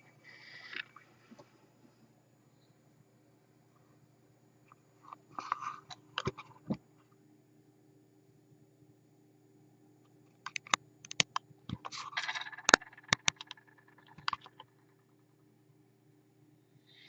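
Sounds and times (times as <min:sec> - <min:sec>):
steady low hum: 0:00.0 - 0:17.0
sharp irregular clicks and knocks: 0:10.3 - 0:15.2.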